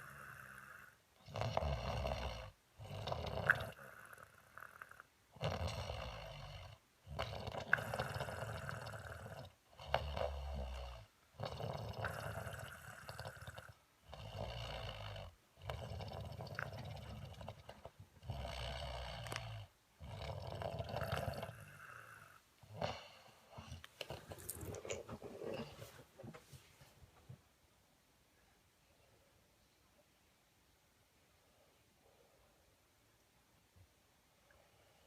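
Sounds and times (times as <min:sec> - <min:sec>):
person snoring: 0:00.0 - 0:26.0.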